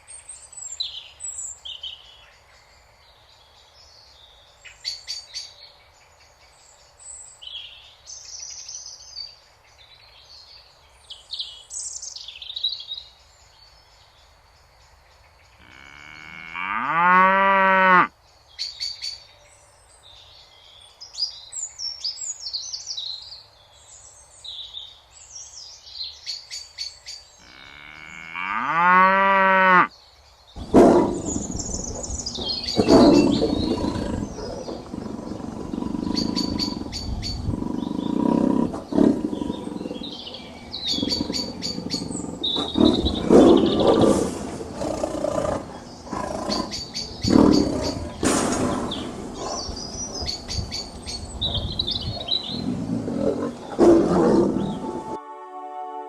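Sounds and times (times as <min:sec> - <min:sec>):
songbirds chirping and trilling: 0:00.0 - 0:55.2
cow mooing: 0:15.6 - 0:18.1, 0:27.4 - 0:29.9, 0:52.7 - 0:55.2.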